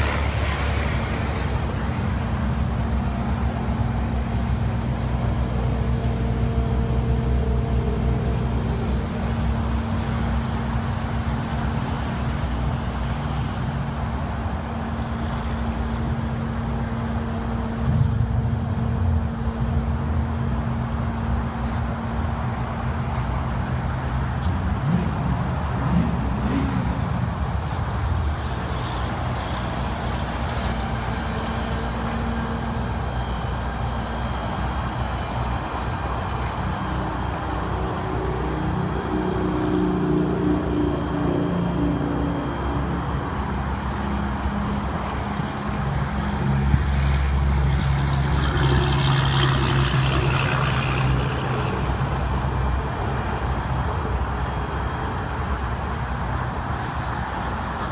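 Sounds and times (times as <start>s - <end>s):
diesel engine humming: 0.0s - 57.9s.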